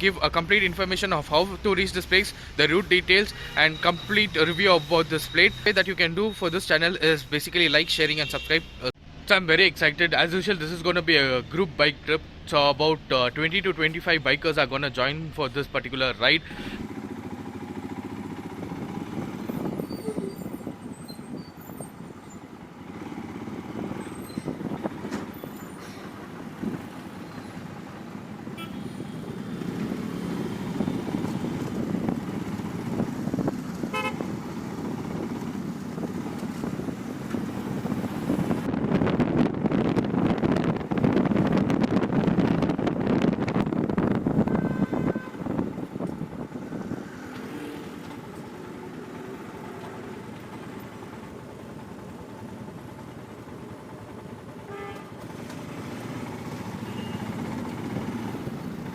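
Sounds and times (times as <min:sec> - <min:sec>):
car horns honking: 0:07.6 - 0:08.9, 0:28.4 - 0:29.4, 0:33.8 - 0:34.4, 0:44.3 - 0:45.7, 0:54.7 - 0:55.3, 0:56.8 - 0:57.3
motorcycle engine and road noise: 0:16.4 - 0:58.9.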